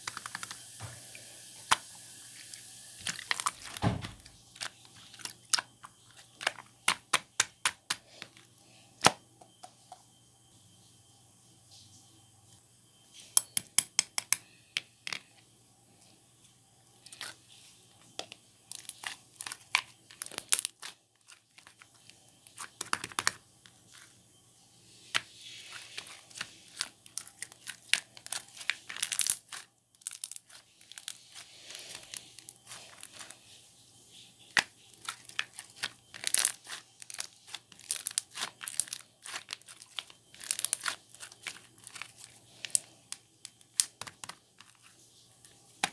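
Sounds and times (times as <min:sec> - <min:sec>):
slime crackling and popping: 0:18.7 - 0:23.4, 0:25.6 - 0:33.4, 0:34.6 - 0:42.8.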